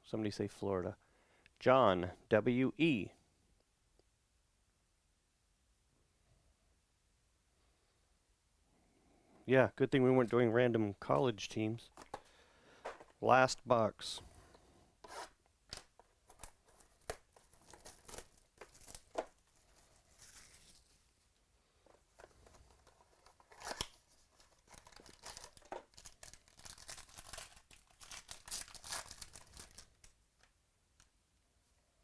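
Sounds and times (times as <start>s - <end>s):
wrapper tearing and crinkling: 16.3s - 21.0s, 23.2s - 30.2s.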